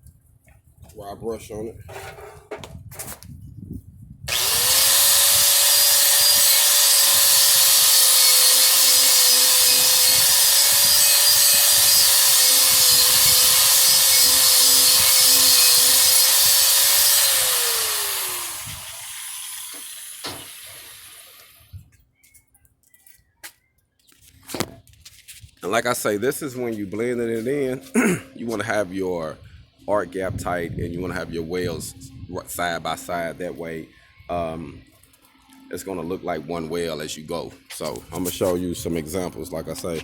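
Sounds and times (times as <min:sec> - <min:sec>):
angle grinder with wire brush whining: 0:04.3 - 0:21.6.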